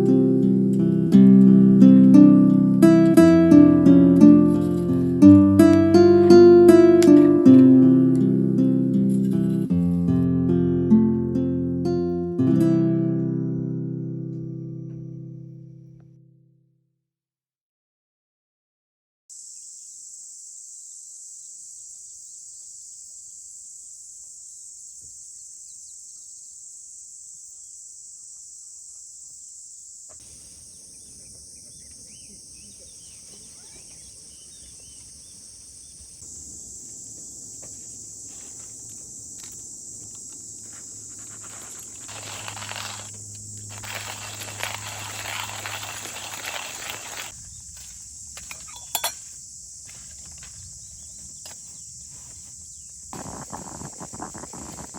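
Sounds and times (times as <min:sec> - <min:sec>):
crickets and insects chirring: 0:00.0 - 0:14.7, 0:19.3 - 0:54.9
rustling noise: 0:36.0 - 0:54.9
low hum: 0:41.1 - 0:47.3.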